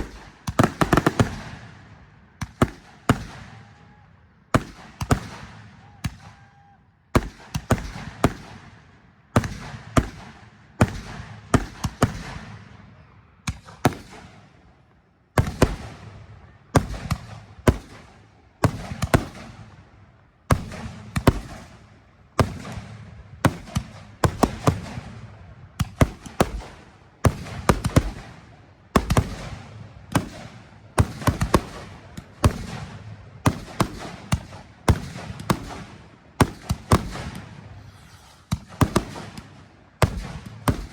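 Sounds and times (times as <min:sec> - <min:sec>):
fireworks banging: 0:31.0 - 0:40.9.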